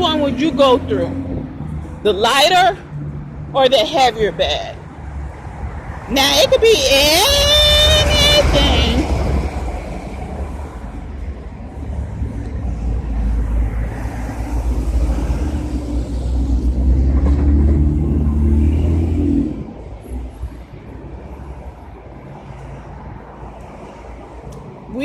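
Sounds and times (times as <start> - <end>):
motor vehicle engine drone: 6.9 - 22.2.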